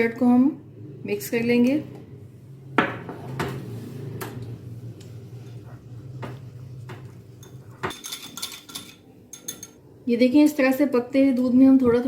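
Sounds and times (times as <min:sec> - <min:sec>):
metal utensil clinking on dish: 0:07.4 - 0:09.8.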